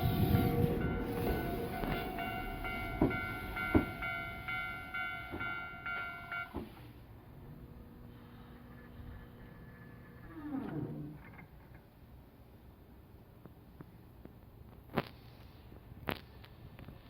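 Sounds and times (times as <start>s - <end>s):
level crossing warning bell: 0.0s - 6.9s
train wheels knocking over rail joints: 0.0s - 6.9s.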